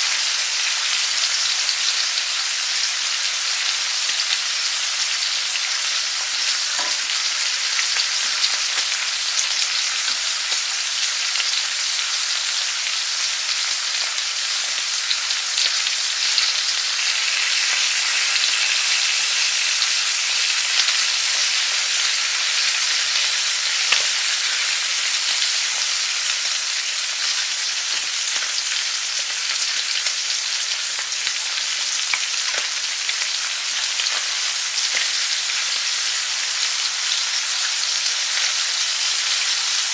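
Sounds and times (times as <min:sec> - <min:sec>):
food sizzling in a pan: 0:00.0 - 0:39.9
small pops of frying: 0:05.8 - 0:12.1, 0:14.0 - 0:25.6, 0:27.4 - 0:36.2.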